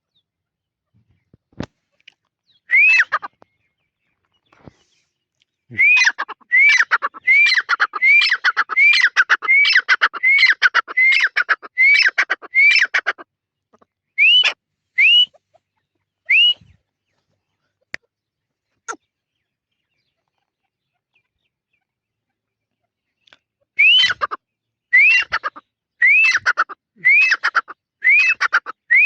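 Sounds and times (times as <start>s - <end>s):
francolin calling: 5.7s - 13.2s.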